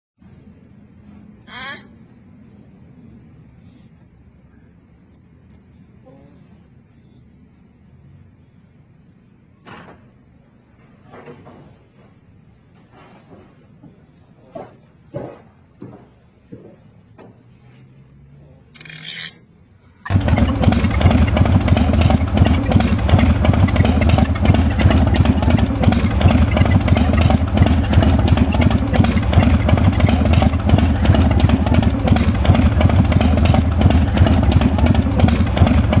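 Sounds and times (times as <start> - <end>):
motorcycle engine starting and idling: 20.1 - 36.0.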